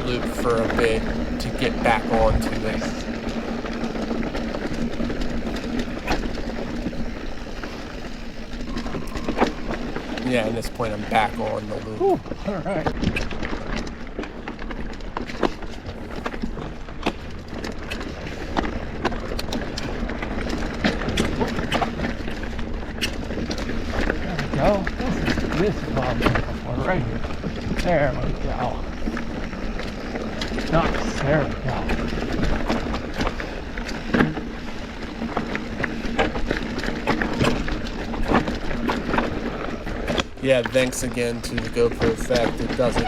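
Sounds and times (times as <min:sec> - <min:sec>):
bike clicks and knocks on stones: 0:00.0 - 0:43.0
low rumble of rolling tyres: 0:00.0 - 0:43.0
wind noise: 0:00.0 - 0:43.0.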